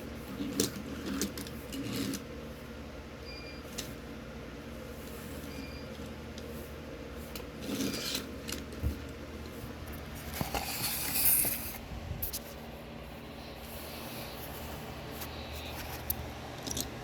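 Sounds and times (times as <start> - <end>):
packaging rubbing and scraping: 6.7 - 8.6, 10.1 - 12.4.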